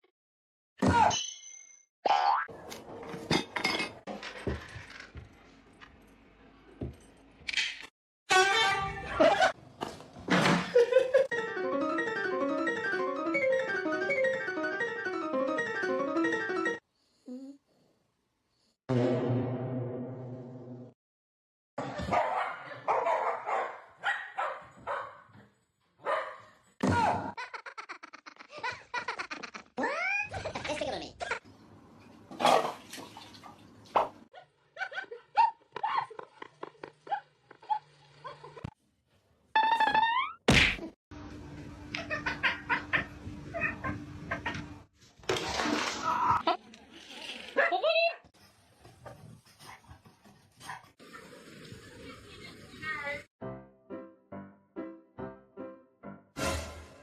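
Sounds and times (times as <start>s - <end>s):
piano-like keyboard melody: 11.3s - 16.8s, 53.4s - 56.4s
dog yipping: 22.1s - 25.2s.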